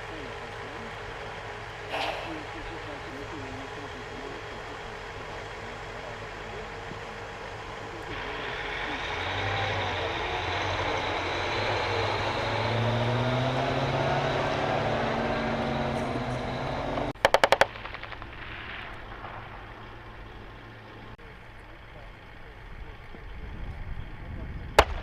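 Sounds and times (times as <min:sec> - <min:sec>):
heavy vehicle engine running: 0:00.0 - 0:25.0
automatic weapon shots: 0:17.2 - 0:19.7, 0:24.8 - 0:25.0.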